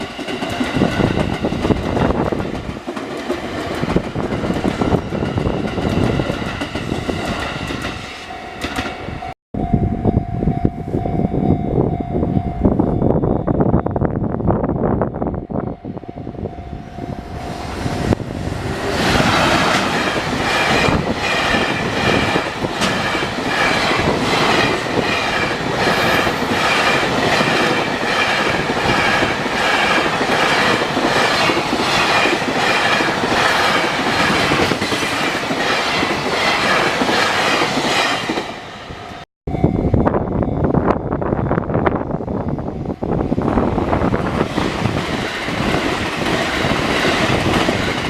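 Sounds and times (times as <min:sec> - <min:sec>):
train wheels clattering over rail joints: 0:18.9 - 0:38.5.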